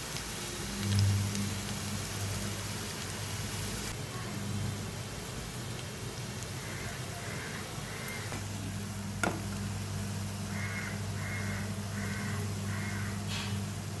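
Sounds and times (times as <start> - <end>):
crow cawing: 6.5 - 8.4, 10.5 - 13.2.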